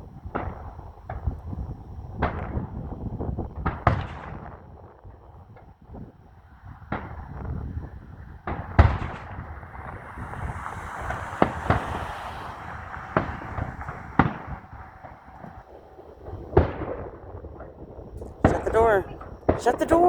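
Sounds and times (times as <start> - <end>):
fireworks bangs: 6.9 - 20.0
fireworks crackling fizz: 8.5 - 20.0.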